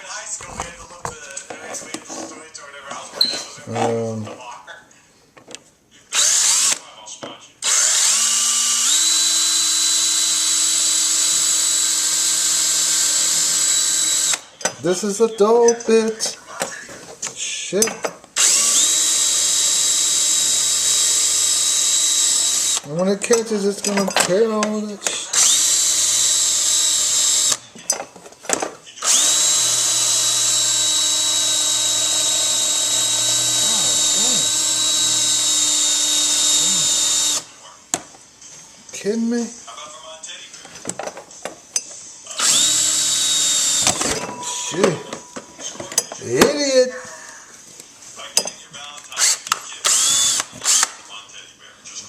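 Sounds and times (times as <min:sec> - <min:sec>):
electric drill whining: 0:06.1 - 0:06.8, 0:07.6 - 0:14.5, 0:18.4 - 0:22.9, 0:25.3 - 0:27.6, 0:29.0 - 0:37.5, 0:42.4 - 0:45.2, 0:49.2 - 0:50.9.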